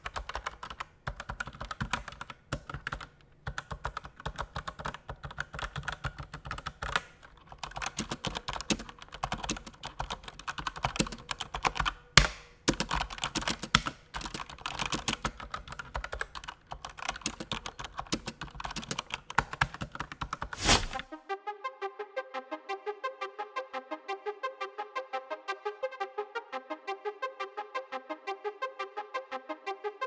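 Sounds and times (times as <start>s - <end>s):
mechanical keyboard typing: 0.0s - 20.9s.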